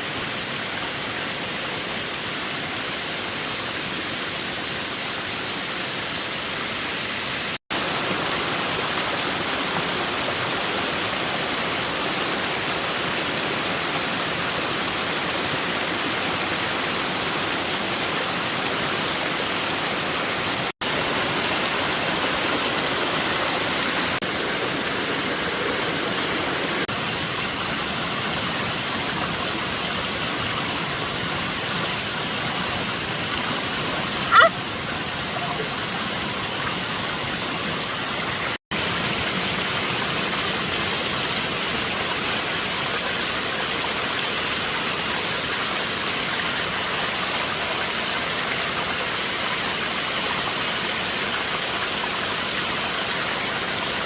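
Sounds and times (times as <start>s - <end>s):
rushing water: 0.0s - 54.0s.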